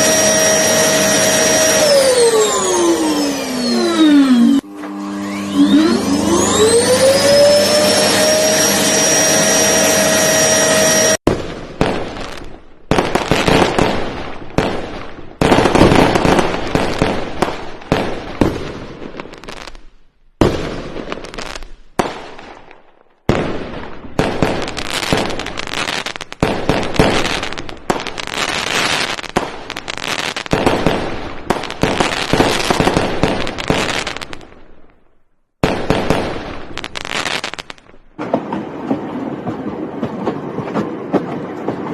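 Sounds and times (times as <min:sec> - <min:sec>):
pitched whine: 0:00.0 - 0:11.2
fireworks crackling and popping: 0:10.5 - 0:40.7.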